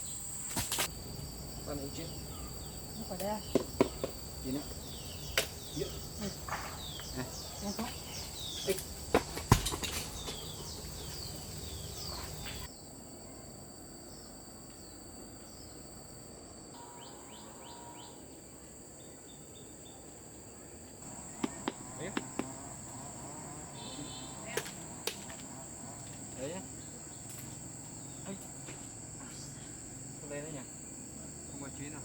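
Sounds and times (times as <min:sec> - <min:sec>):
insects droning: 0:00.0 - 0:32.0
sharp knocks and snaps: 0:03.2 - 0:04.2, 0:05.3 - 0:05.6, 0:21.3 - 0:22.6, 0:24.5 - 0:26.2.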